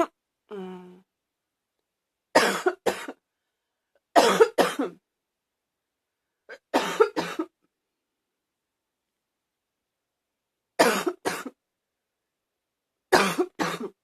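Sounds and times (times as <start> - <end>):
person coughing: 2.4 - 3.2, 4.2 - 5.0, 6.5 - 7.6, 10.8 - 11.6, 13.1 - 14.0.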